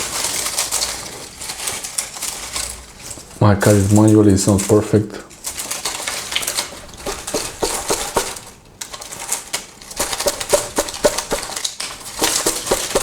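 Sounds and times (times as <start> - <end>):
plastic strip crackling: 9.9 - 13.0.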